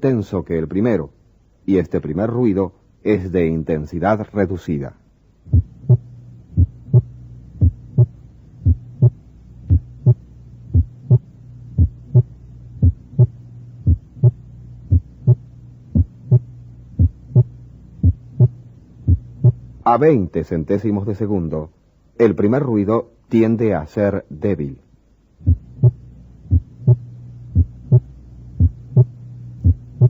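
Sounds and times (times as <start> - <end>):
steady low hum: 0.0 - 30.0
heartbeat lub-dub: 5.5 - 19.8, 25.4 - 30.0.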